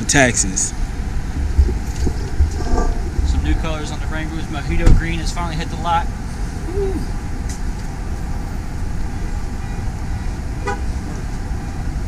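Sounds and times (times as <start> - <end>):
low traffic-like rumble: 0.0 - 12.0.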